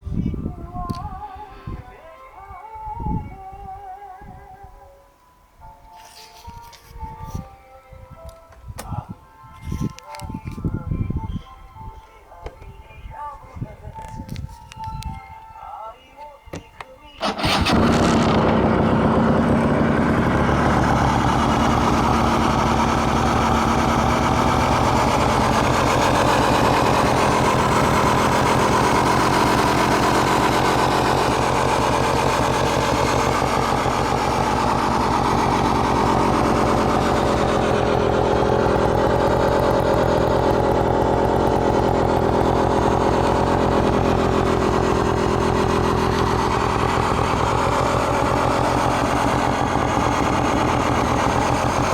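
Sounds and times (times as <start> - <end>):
scooter engine idling loudly: 17.2 - 51.9.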